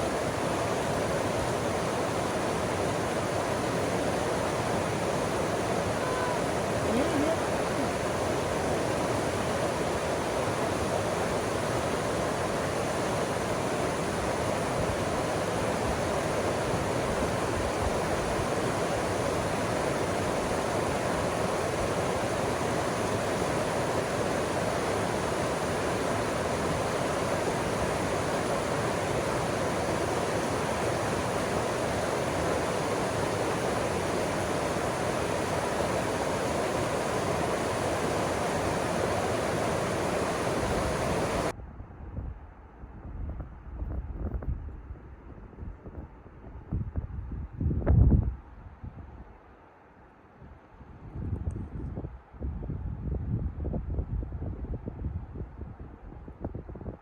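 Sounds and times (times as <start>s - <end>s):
rushing water: 0.0s - 41.5s.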